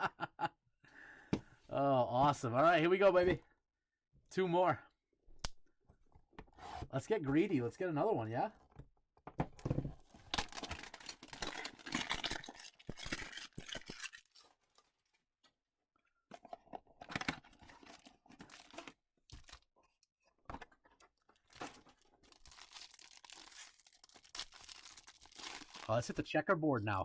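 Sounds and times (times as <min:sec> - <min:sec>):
packaging tearing and crinkling: 0:10.2 - 0:14.6, 0:21.4 - 0:26.0.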